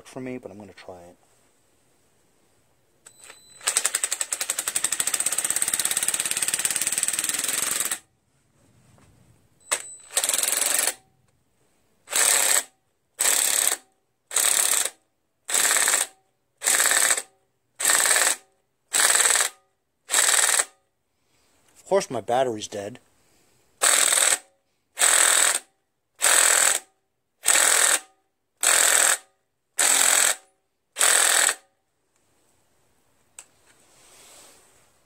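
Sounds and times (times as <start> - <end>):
cordless drill rattling: 3.0 - 8.1, 9.7 - 11.0, 12.1 - 20.8, 23.8 - 31.7.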